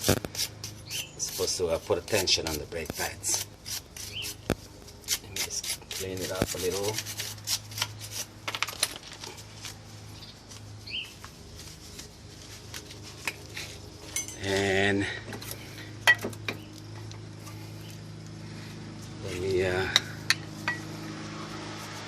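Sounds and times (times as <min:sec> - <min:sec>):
metallic clinks and taps: 0:19.9 - 0:20.9.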